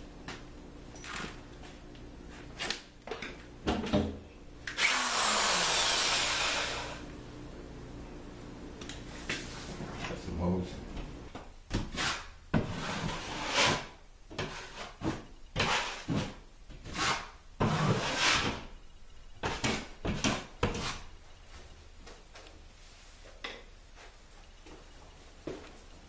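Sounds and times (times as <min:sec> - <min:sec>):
building materials scraping and knocking: 0:11.7 - 0:18.6.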